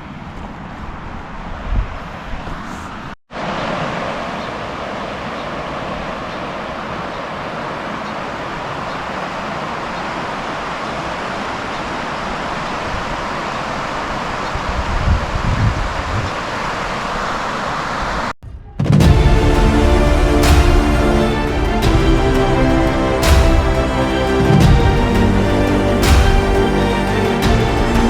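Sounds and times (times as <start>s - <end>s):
outdoor noise: 0.0s - 28.0s
river water rushing: 3.3s - 14.7s, 19.0s - 28.0s.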